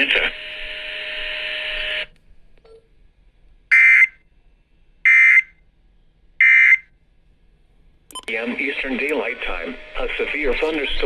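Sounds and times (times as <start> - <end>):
digital data tone bursts: 9.5 - 11.0.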